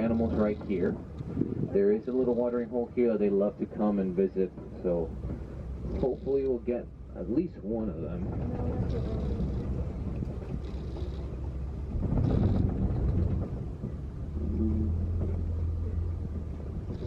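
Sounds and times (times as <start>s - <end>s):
wind on microphone: 0.0s - 2.8s, 7.7s - 17.0s
truck engine rumble: 0.0s - 17.0s.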